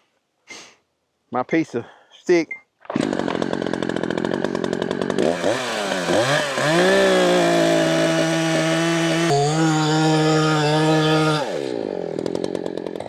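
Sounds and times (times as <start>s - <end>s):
chainsaw idling and revving: 2.9s - 13.0s.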